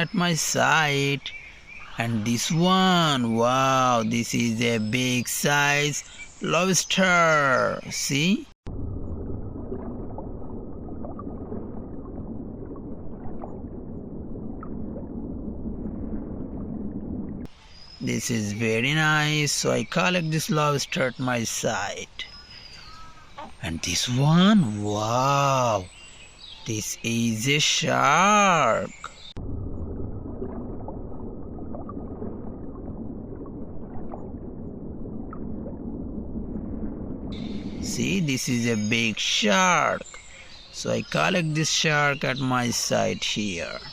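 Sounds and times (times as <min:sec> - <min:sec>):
water gurgling: 0:00.0 - 0:43.9
underwater low rumble: 0:08.6 - 0:17.9, 0:29.0 - 0:39.3.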